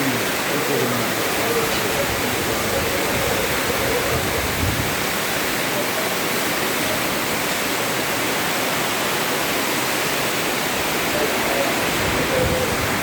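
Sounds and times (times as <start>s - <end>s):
torrential rain pouring: 0.0s - 13.0s.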